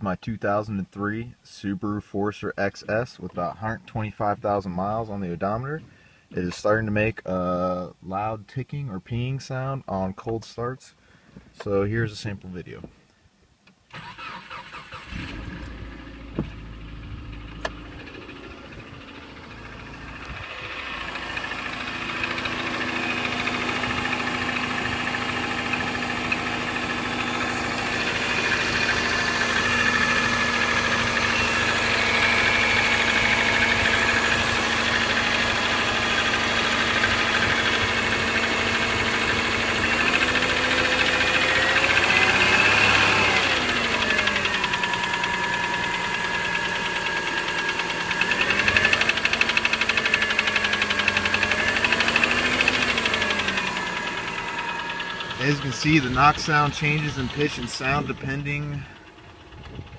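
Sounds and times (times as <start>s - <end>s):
car engine running: 14.9s - 59.9s
engine ticking knock: 16.2s - 59.9s.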